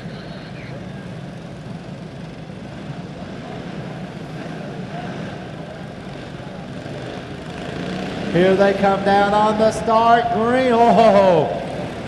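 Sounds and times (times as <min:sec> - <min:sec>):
karts engines droning: 0:00.0 - 0:12.0.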